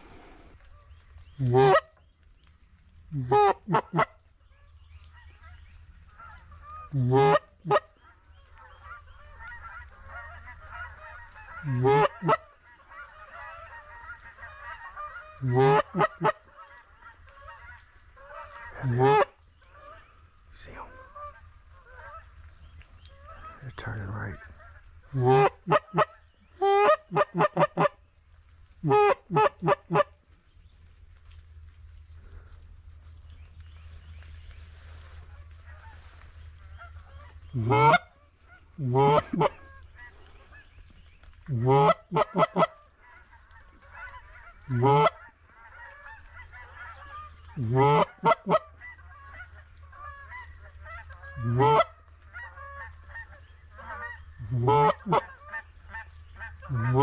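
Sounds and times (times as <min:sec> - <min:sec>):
flock of geese chattering: 0:00.0 - 0:28.1, 0:28.7 - 0:30.2, 0:32.1 - 0:57.0
loud goose honks: 0:06.1 - 0:20.0, 0:24.2 - 0:28.0, 0:28.8 - 0:30.2, 0:36.7 - 0:40.6, 0:41.6 - 0:57.0.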